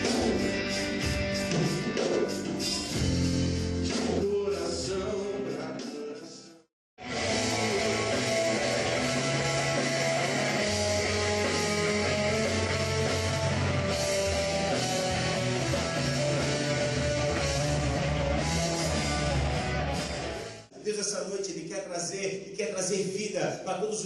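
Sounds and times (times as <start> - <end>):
rock band playing: 0.0 - 4.4, 7.0 - 20.7
guitars: 0.0 - 4.5, 7.0 - 20.7
steady bass notes: 7.0 - 20.7.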